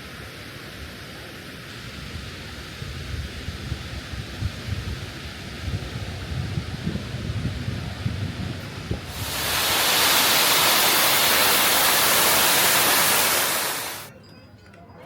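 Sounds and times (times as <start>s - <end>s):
wind buffeting microphone: 2.8s - 14.1s
rushing falling water: 8.8s - 14.1s.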